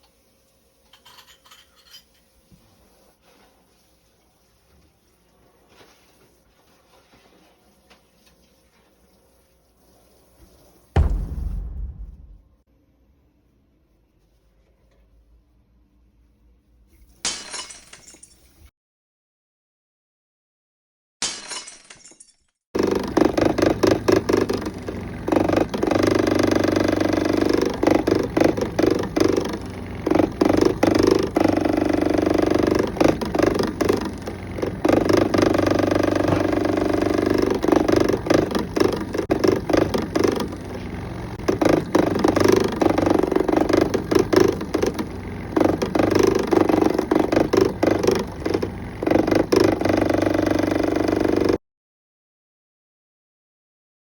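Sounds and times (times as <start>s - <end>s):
steady hum: 11.0s - 12.6s
refrigerator fan rattling: 22.8s - 51.6s.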